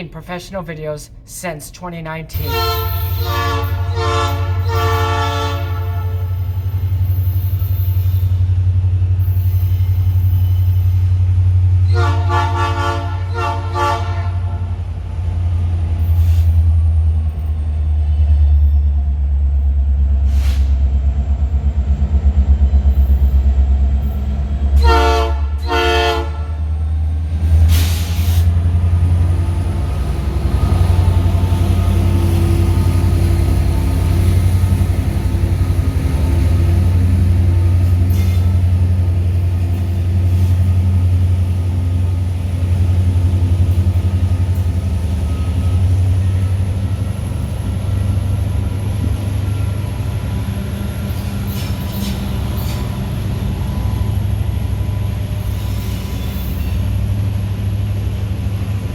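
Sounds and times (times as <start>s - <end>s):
locomotive engine rumble: 0.0s - 58.9s
train horn blasts: 2.3s - 6.5s, 11.8s - 14.8s, 24.7s - 26.7s.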